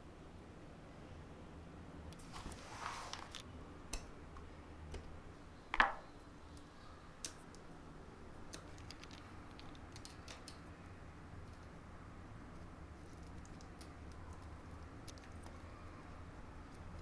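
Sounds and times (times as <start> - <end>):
small hard objects clicking: 8.5 - 10.6.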